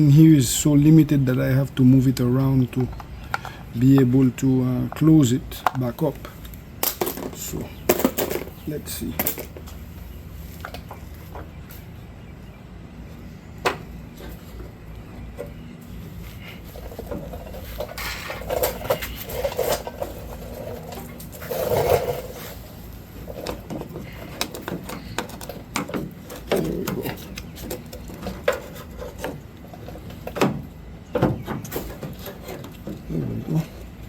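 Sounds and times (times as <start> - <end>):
plastic parts clicking and rubbing: 16.7 - 22.6, 23.2 - 30.7.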